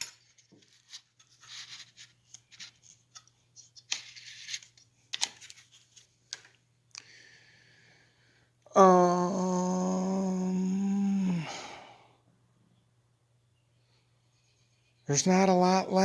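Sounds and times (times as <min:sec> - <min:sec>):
scraping and rubbing of parts: 0:00.0 - 0:06.5
faint steady hum: 0:00.0 - 0:16.0.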